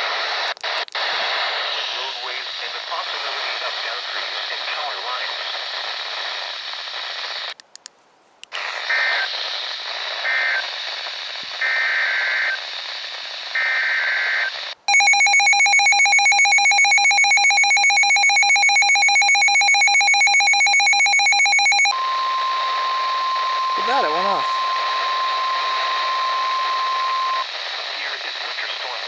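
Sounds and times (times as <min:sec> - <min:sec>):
radio static hiss: 0:00.0 - 0:07.6, 0:08.5 - 0:14.9, 0:21.9 - 0:29.0
harsh steady alert tone: 0:14.9 - 0:27.4.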